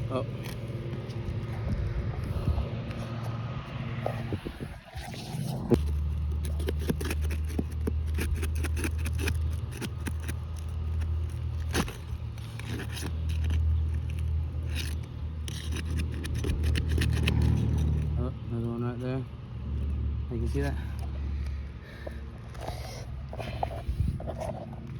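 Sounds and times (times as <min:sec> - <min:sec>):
steady low hum: 0:00.0 - 0:24.9
roof shingles scraping and crackling: 0:04.9 - 0:18.1.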